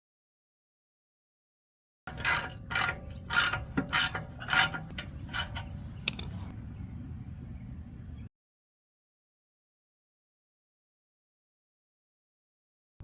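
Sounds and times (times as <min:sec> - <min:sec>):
ratchet wrench clicking: 0:02.1 - 0:06.4
low background rumble: 0:02.5 - 0:08.3.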